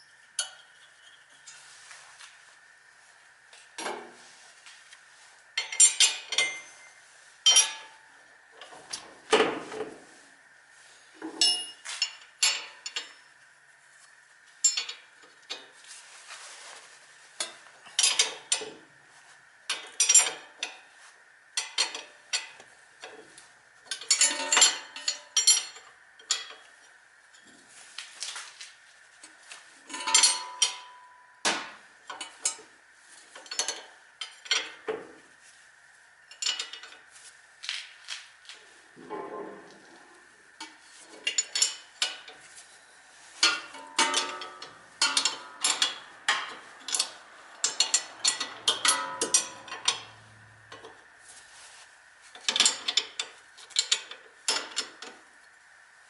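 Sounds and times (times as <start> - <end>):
metal tools clinking: 5.6 - 6.9, 7.5 - 8.0, 11.4 - 13.2, 43.4 - 50.9.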